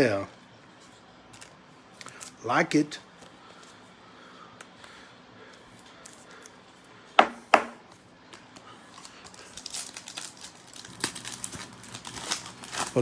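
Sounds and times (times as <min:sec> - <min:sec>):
plastic wrapper crinkling and tearing: 0:01.3 - 0:02.4, 0:05.6 - 0:06.6, 0:08.3 - 0:13.0
sharp knocks: 0:07.2 - 0:07.8.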